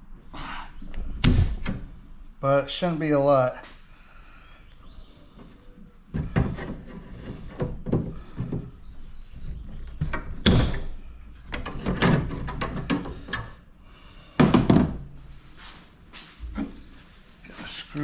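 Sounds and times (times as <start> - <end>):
metal and plastic parts clunking: 6.1 - 13.7.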